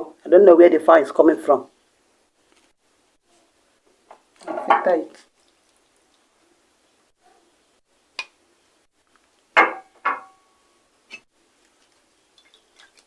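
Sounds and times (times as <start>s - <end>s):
utensils knocking and clinking: 9.6s - 10.4s.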